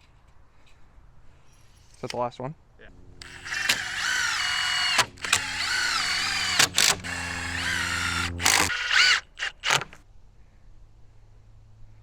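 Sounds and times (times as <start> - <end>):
power drill driving screws into wood: 3.2 - 10.0.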